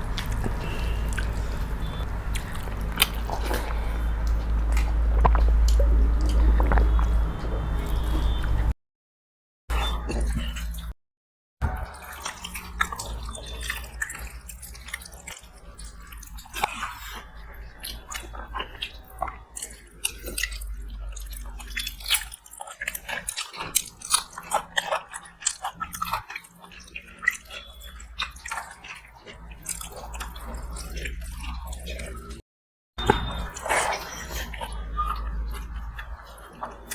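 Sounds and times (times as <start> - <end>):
people chewing and eating: 0.0 - 8.7, 9.7 - 11.0, 11.6 - 32.4, 33.0 - 36.9
steady low hum: 0.0 - 8.7
wet mouth clicks and smacks: 0.1 - 8.6.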